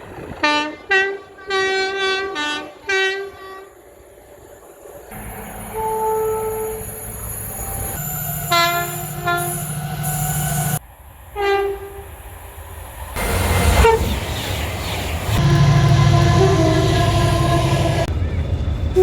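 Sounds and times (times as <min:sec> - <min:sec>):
train horn blasts: 0:00.4 - 0:03.8, 0:05.1 - 0:10.8, 0:11.4 - 0:12.0, 0:15.4 - 0:18.1
locomotive running: 0:04.3 - 0:19.0.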